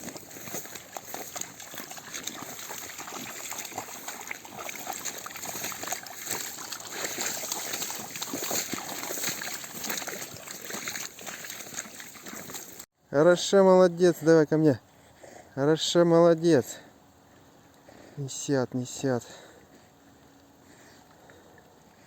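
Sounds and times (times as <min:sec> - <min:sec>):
water splashing and sloshing: 0:00.0 - 0:12.9.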